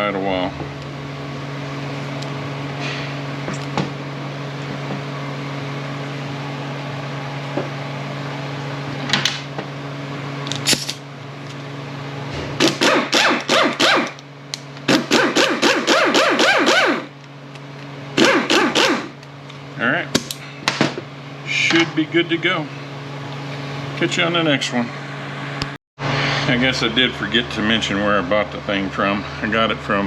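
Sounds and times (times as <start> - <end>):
low machine hum: 0.0 - 30.0
air impact wrench hammering: 12.6 - 14.2, 14.9 - 17.1, 18.2 - 19.2.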